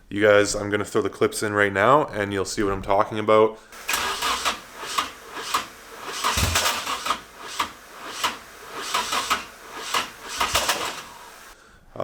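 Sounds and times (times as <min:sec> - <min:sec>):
engine cranking without starting: 0:03.8 - 0:11.6.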